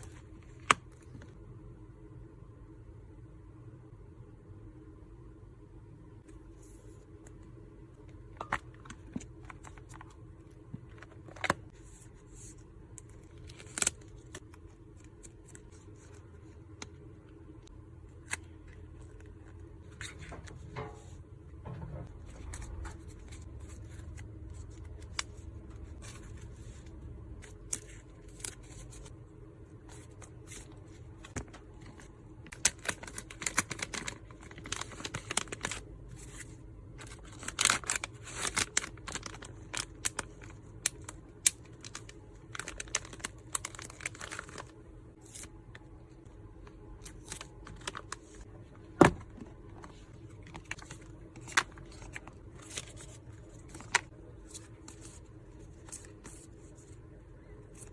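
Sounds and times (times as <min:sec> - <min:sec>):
packaging rustling and crinkling: 0:29.9 - 0:45.5, 0:46.6 - 0:56.7
packaging tearing: 0:37.0 - 0:44.7.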